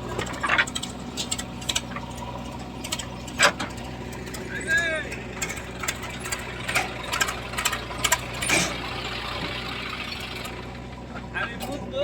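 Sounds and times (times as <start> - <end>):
diesel engine running: 0.0 - 12.0
sharp clicks and knocks: 0.1 - 2.2.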